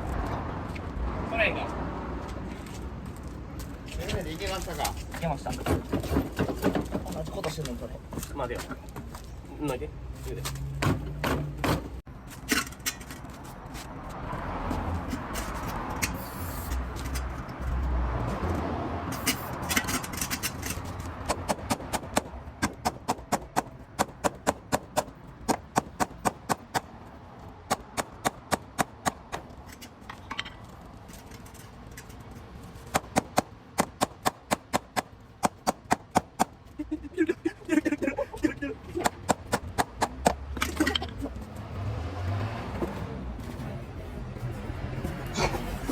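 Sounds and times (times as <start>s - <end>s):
rough rubbing and scraping: 42.6s - 45.9s.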